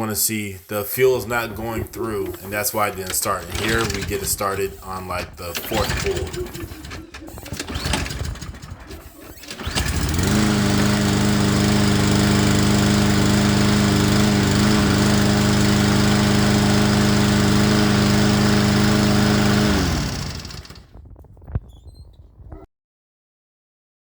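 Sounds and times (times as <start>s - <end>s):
lawnmower engine running: 0.6s - 21.1s.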